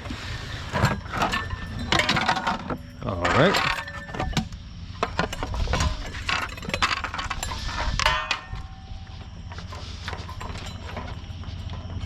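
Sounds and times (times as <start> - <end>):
scrap metal clanking: 0.1 - 12.0
ringing metal clang: 1.2 - 4.6, 5.3 - 9.2.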